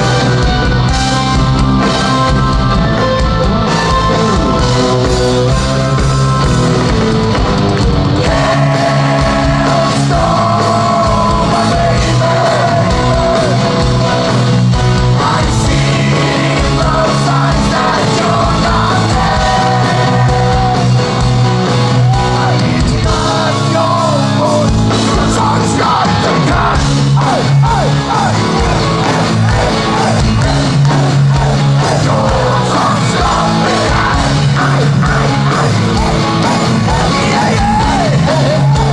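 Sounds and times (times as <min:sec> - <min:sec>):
distorted guitars: 0:00.0 - 0:38.9
drums: 0:00.0 - 0:38.9
heavy metal band playing live: 0:00.0 - 0:38.9
sung and shouted vocals: 0:08.0 - 0:38.9.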